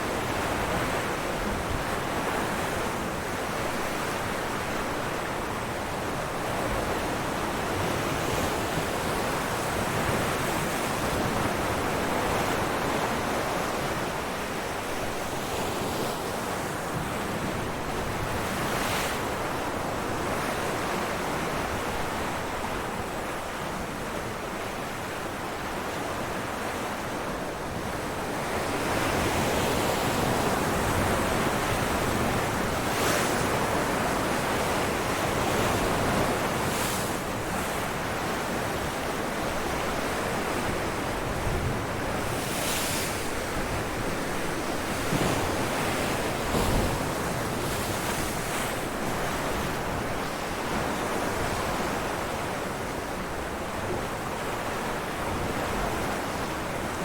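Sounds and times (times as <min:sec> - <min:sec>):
ocean waves breaking on rocks: 0:28.6 - 0:52.3.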